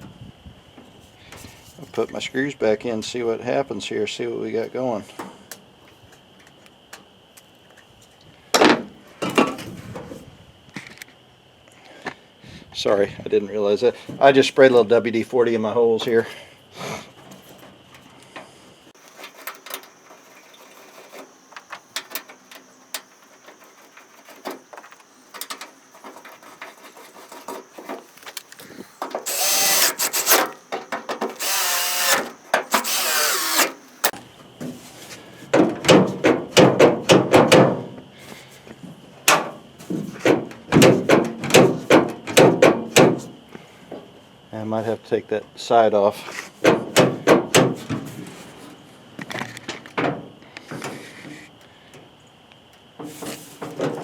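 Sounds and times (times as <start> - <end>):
power drill driving screws: 29.1 - 34.1.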